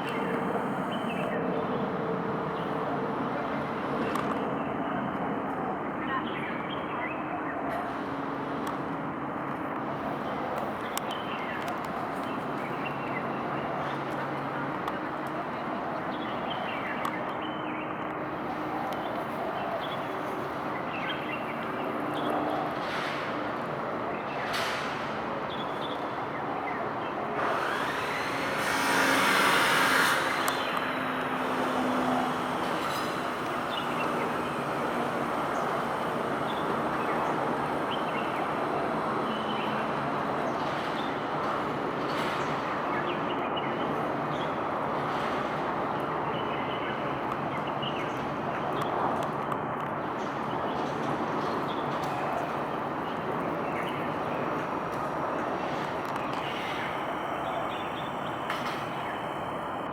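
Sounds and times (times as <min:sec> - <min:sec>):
steady traffic noise: 0:00.0 - 0:59.9
vehicle passing with high whine: 0:27.4 - 0:40.8.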